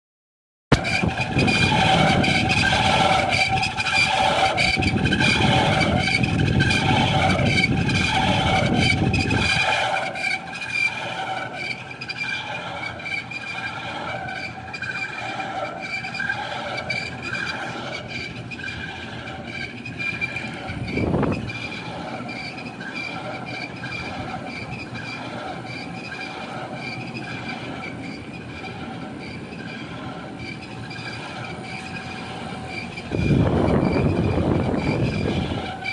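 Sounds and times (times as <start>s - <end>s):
air conditioner motor whine: 0.7s - 35.9s
heavy low rumble: 32.5s - 35.8s.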